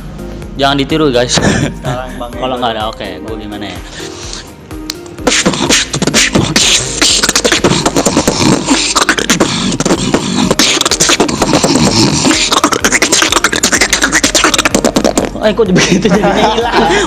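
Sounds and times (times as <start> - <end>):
person beatboxing: 5.2 - 15.8.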